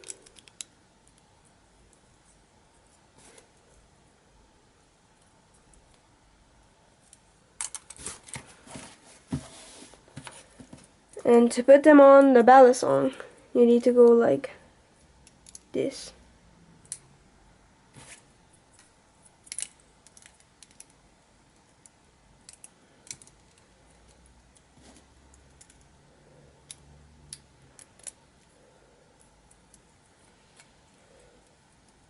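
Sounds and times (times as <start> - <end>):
plastic pieces clicking together: 22.4 - 24.2.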